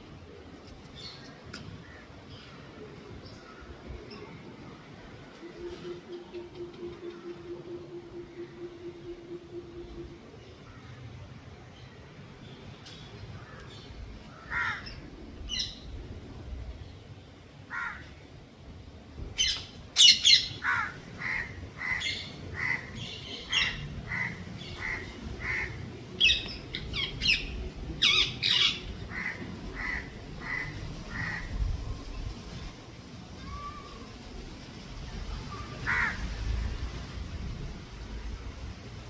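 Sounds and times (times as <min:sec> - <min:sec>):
parrots squawking: 0:19.4 - 0:31.5.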